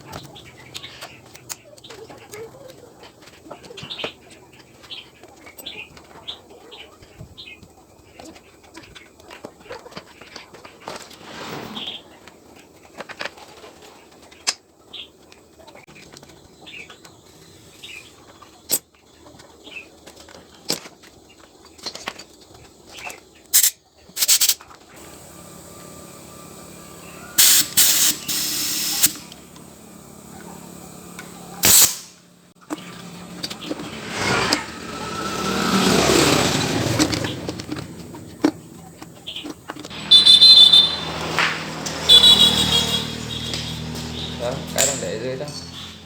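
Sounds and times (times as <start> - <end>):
spraying hiss: 23.6 - 32.5
steady hum: 25.0 - 33.5.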